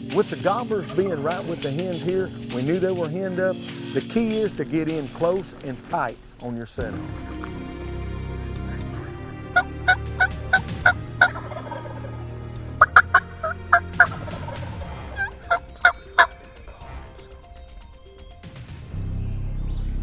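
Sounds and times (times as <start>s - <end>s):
turkey yelping: 7.2s - 18.3s.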